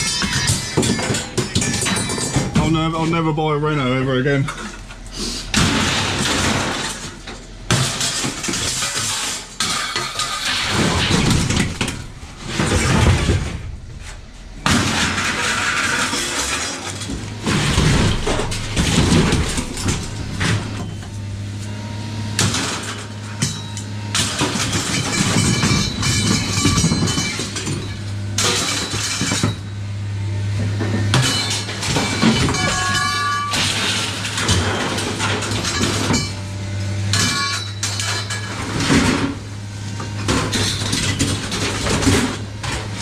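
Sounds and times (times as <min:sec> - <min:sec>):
objects clattering and crashing: 0:00.0 - 0:03.4, 0:04.2 - 0:43.0
engine idling: 0:09.4 - 0:16.0, 0:17.0 - 0:22.4.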